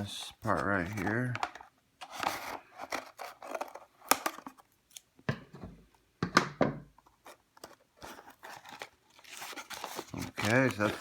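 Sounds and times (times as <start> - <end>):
packaging rustling: 0.4 - 4.6, 7.2 - 11.0.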